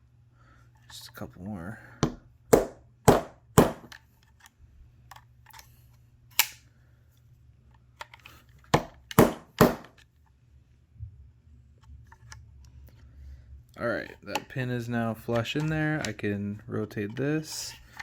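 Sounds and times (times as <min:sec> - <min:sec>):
screwdriver knocking on tabletop: 0:02.0 - 0:04.0, 0:08.8 - 0:09.9.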